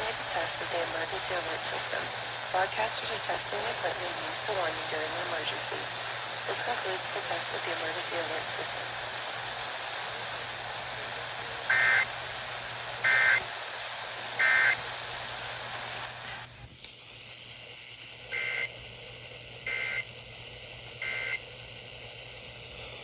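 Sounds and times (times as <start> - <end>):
radio hiss: 0.0 - 16.7, 21.0 - 21.4
two-tone data warble bursts: 11.7 - 12.1, 13.0 - 13.4, 14.4 - 14.8.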